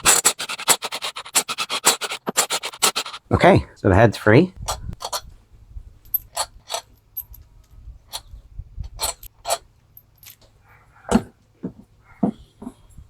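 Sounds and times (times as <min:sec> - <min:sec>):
metal clicks and clinks: 0:09.0 - 0:10.5.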